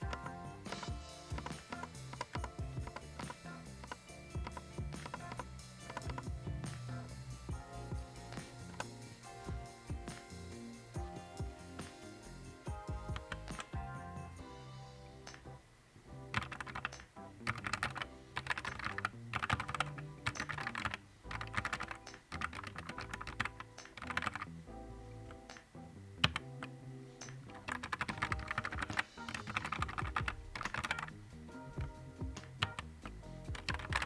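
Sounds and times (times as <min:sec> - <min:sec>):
mechanical keyboard typing: 0:00.0 - 0:06.4, 0:13.1 - 0:13.8, 0:16.3 - 0:24.5, 0:26.2 - 0:31.1, 0:32.4 - 0:34.0.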